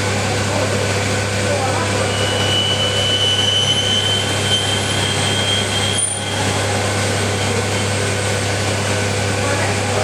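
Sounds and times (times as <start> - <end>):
lathe motor hum: 0.0 - 10.0
high cutting whine: 1.6 - 9.3.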